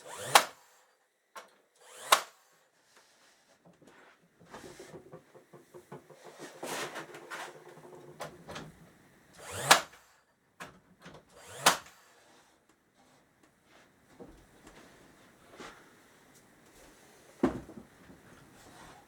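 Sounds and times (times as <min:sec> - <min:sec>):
pneumatic nail gun firing: 0:00.0 - 0:00.9, 0:01.8 - 0:02.7, 0:08.6 - 0:10.2, 0:11.3 - 0:12.4.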